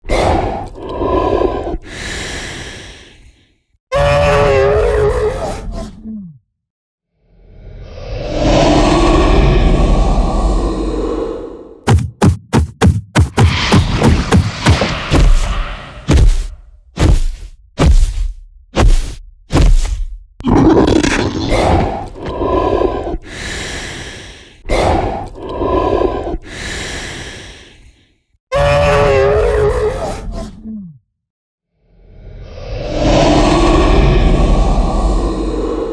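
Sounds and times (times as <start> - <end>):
monster growls and roars: 0.0 - 2.0, 3.9 - 6.4, 7.4 - 12.0, 12.6 - 26.5, 28.6 - 31.0, 32.0 - 35.9
hit: 11.9 - 20.2
monster growl: 20.4 - 23.3.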